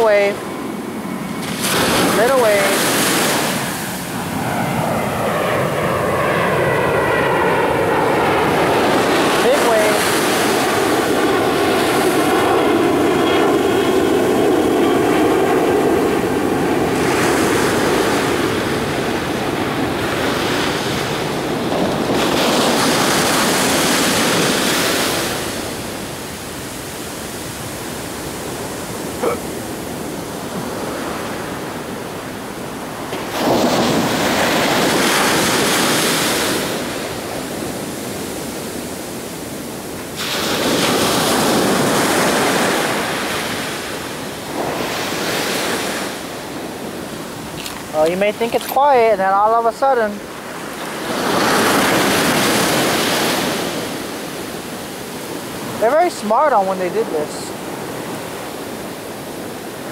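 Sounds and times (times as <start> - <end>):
airplane engine whine: 0.0 - 59.9
ocean surf breaking on shore: 0.0 - 59.9.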